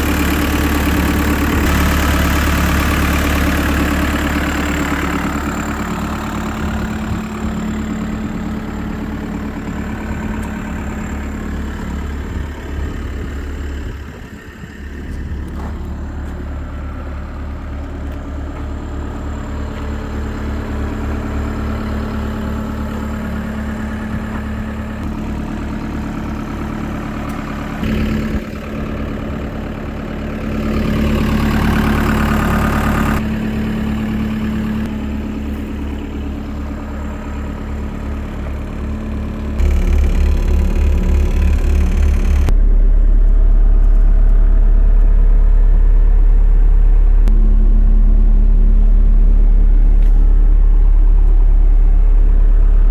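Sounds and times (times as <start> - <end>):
diesel engine idling: 0.0 - 52.9.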